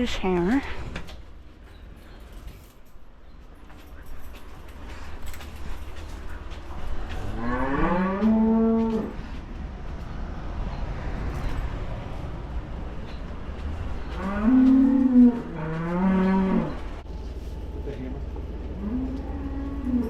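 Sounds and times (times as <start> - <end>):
cows mooing: 7.2 - 9.2, 14.1 - 17.0, 18.8 - 20.0.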